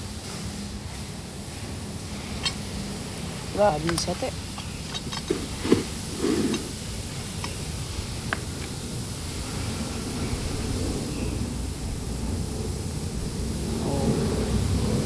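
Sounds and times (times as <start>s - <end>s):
steady background hiss: 0.0s - 15.0s
parts clicking and knocking: 2.2s - 2.8s, 3.6s - 9.0s.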